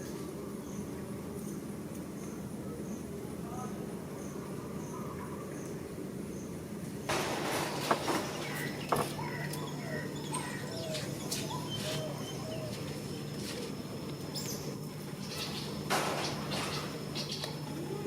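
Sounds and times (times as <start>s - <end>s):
steady low hum: 0.0s - 18.0s
chirping calls and squeaks: 8.1s - 13.4s, 14.3s - 17.6s.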